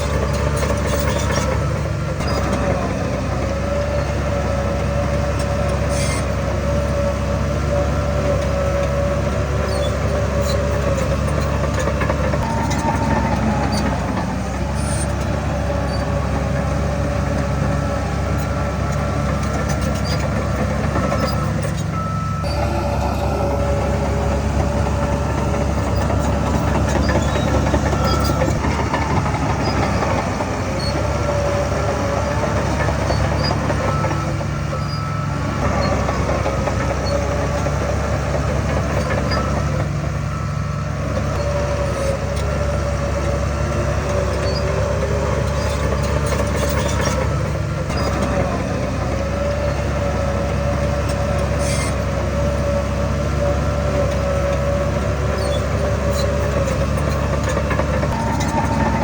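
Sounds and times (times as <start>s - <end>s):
diesel machinery engine rumble: 0.0s - 59.0s
steady whine: 21.9s - 30.8s, 58.0s - 59.0s.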